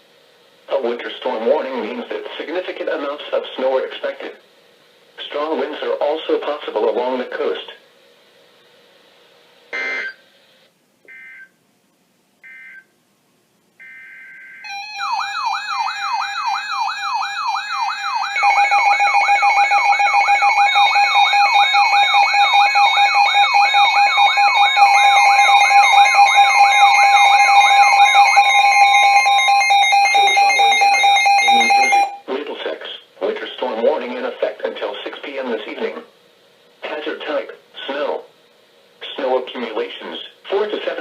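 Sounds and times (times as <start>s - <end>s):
digital data screeches: 9.8s - 10.2s, 24.6s - 32.2s
steady two-tone attention signal: 9.8s - 10.2s, 21.8s - 32.3s
warbling alert tone: 23.5s - 32.2s.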